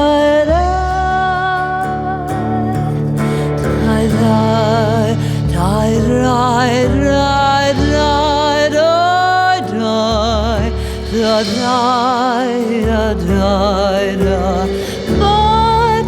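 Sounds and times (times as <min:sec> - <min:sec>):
person singing with vibrato: 0:00.0 - 0:16.0.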